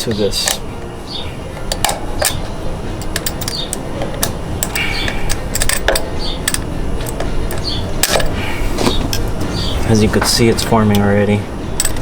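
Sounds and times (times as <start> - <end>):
low background noise: 0.0 - 12.0
pliers clicking on metal: 1.6 - 2.4, 3.0 - 8.4.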